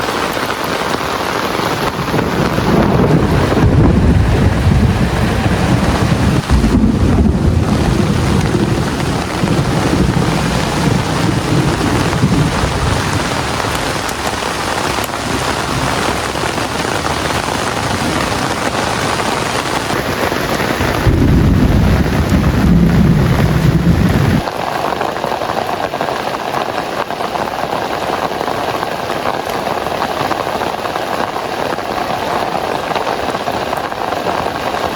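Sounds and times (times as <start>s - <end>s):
heavy rain: 0.0s - 34.9s
rolling thunder: 1.7s - 24.5s.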